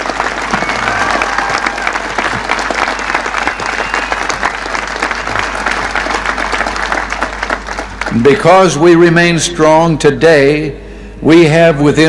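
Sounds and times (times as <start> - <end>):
crowd applauding: 0.0 - 8.7.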